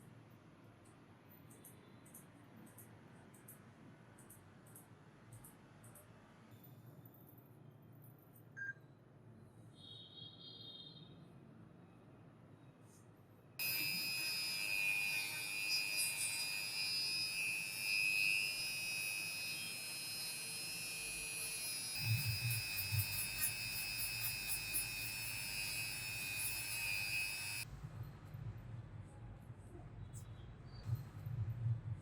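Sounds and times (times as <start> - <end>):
electric tool motor whine: 13.6 - 27.7.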